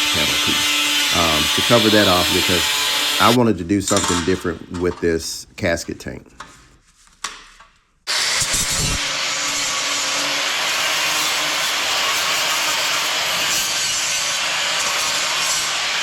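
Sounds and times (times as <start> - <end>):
harsh metalworking hiss: 0.0 - 4.1, 8.1 - 16.0.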